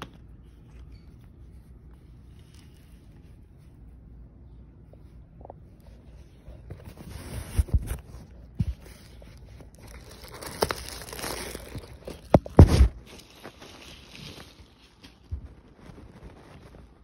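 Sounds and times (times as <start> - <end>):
packaging rustling: 6.8 - 17.0.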